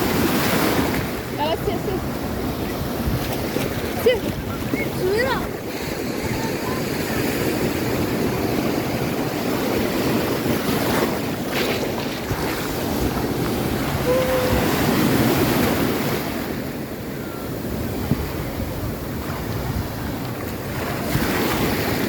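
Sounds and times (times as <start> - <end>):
ocean surf breaking on beach: 0.0 - 22.0
wind buffeting microphone: 0.0 - 22.0.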